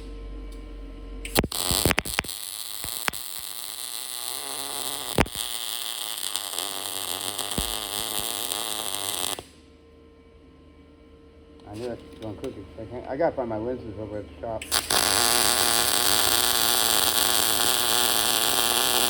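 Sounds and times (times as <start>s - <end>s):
arc welding crackling and hissing: 1.3s - 9.6s, 14.6s - 19.0s.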